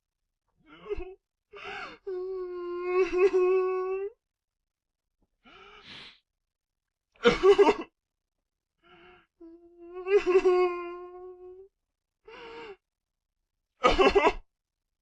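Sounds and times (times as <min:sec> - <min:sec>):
boy sobbing and wailing: 0:01.8 - 0:04.0, 0:09.4 - 0:11.4.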